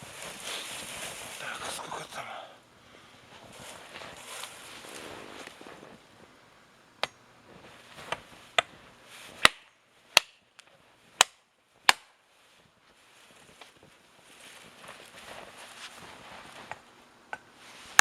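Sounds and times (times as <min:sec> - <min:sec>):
tool chopping wood: 0:09.4 - 0:10.4, 0:11.2 - 0:12.1.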